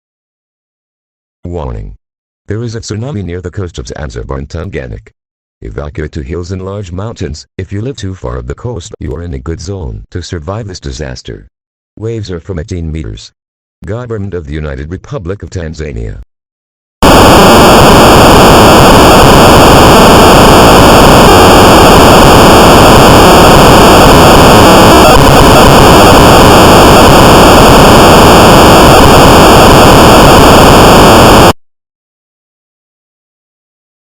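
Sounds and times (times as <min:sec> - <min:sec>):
loud static hiss: 0:17.0 - 0:31.6.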